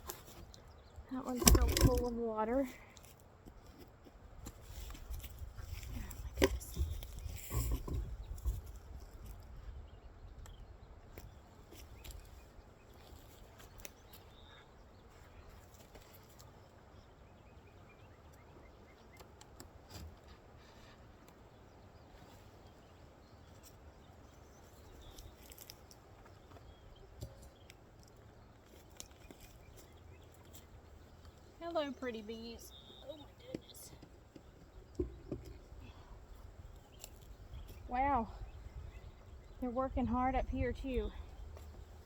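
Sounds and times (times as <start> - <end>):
wind rumble on microphone: 4.4 - 11.4, 34.6 - 42.0.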